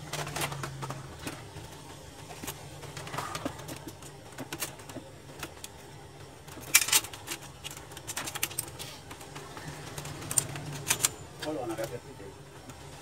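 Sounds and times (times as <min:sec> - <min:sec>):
parts clattering: 0:06.4 - 0:12.0
plastic and metal parts clicking: 0:06.5 - 0:11.9.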